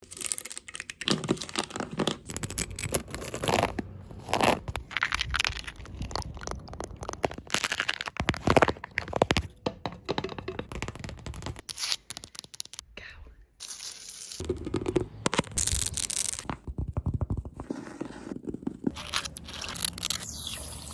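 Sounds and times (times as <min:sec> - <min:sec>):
crackly scratching and crinkling: 0:00.0 - 0:20.9
dense tapping: 0:09.3 - 0:11.6.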